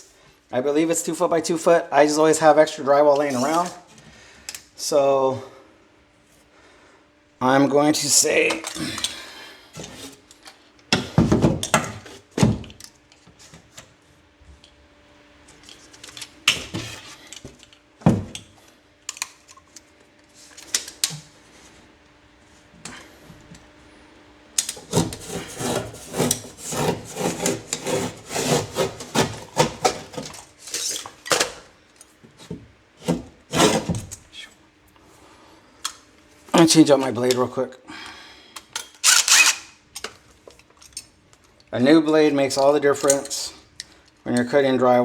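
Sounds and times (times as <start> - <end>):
drywall knocks and scrapes: 11.0 - 12.6, 24.8 - 30.4, 32.4 - 34.1.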